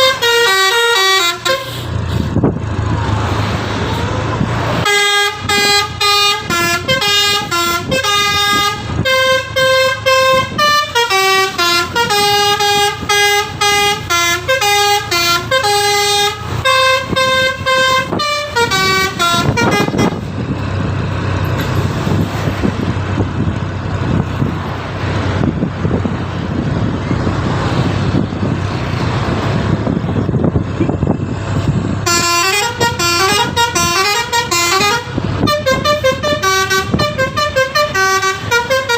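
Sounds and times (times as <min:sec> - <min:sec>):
musical air horn honks: 0:00.0 - 0:01.9, 0:04.8 - 0:20.2, 0:32.1 - 0:38.9
engine and road noise: 0:00.0 - 0:38.9.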